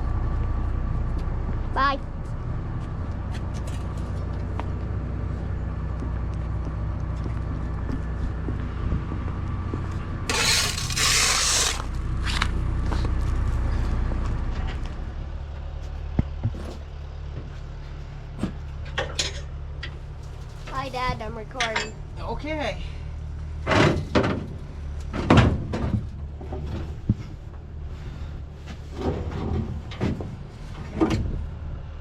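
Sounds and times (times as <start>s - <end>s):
engine running: 0.0s - 22.2s.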